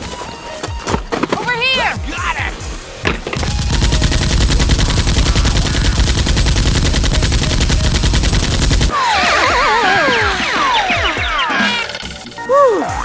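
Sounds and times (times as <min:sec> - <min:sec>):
machine-gun burst: 0:03.4 - 0:12.4
warbling falling whistle tones: 0:08.9 - 0:13.0.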